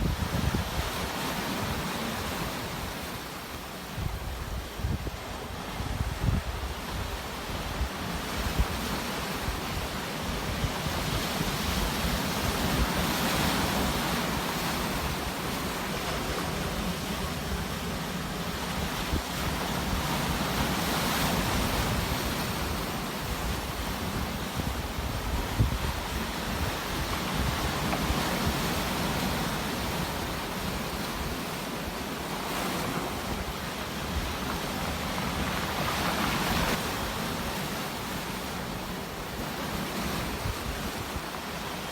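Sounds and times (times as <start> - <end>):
wind on microphone: 0.0 - 3.2, 3.8 - 31.6
sea waves breaking: 0.0 - 41.9.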